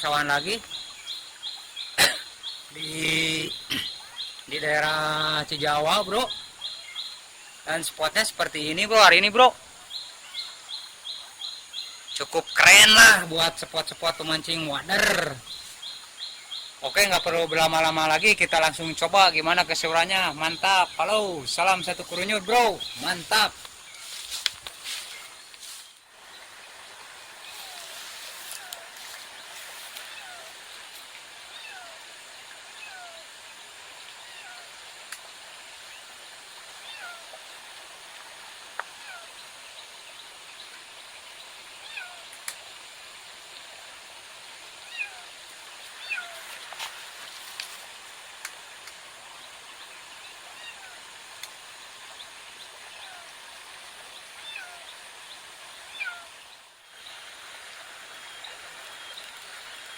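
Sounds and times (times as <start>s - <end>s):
outdoor background hiss: 0.0s - 59.9s
short falling animal calls: 46.0s - 46.6s.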